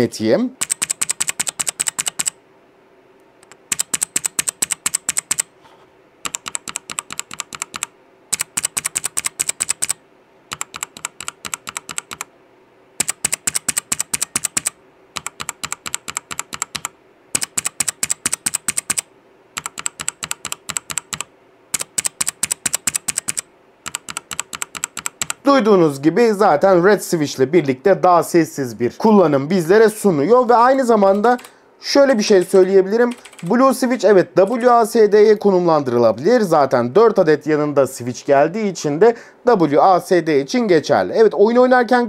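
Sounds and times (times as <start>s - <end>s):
clicky keyboard keys tapped: 0.6s - 2.3s, 3.4s - 5.5s, 6.2s - 12.3s, 13.0s - 19.0s, 19.6s - 25.4s, 32.4s - 33.5s
quieter keyboard keys tapped: 0.6s - 2.4s, 3.4s - 5.5s, 6.2s - 12.3s, 13.0s - 19.0s, 19.6s - 25.4s, 32.4s - 33.6s.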